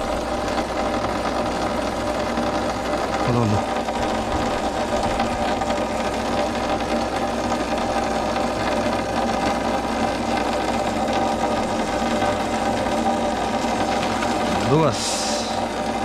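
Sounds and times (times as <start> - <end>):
motor buzzing hum: 0.0 - 16.0.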